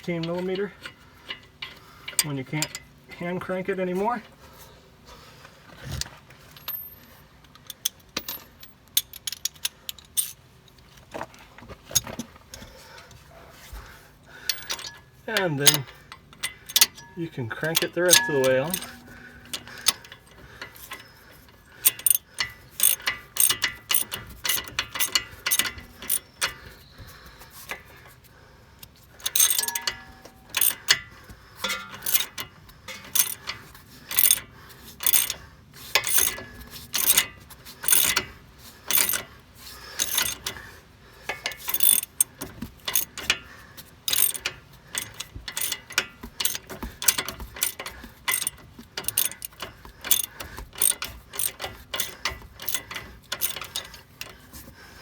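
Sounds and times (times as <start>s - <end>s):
ratchet wrench clicking: 14.4s - 26.6s, 28.8s - 54.6s.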